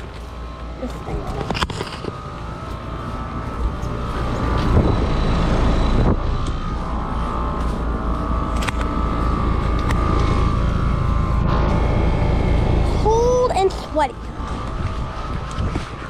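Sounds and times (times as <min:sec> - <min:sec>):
air conditioner unit humming: 0:00.0 - 0:16.0.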